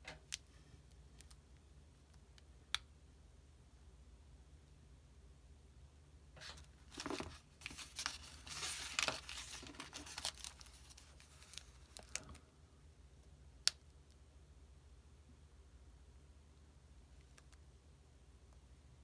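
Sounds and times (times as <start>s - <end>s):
paper rustling and crinkling: 6.4s - 12.4s.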